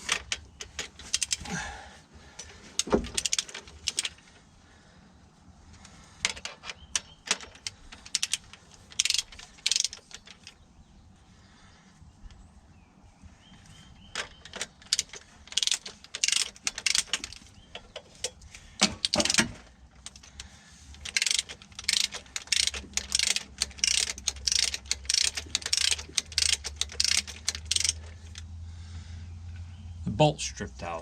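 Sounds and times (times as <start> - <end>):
socket ratchet clicking: 0.0 - 1.5, 2.4 - 4.2, 6.3 - 10.6, 14.1 - 28.5.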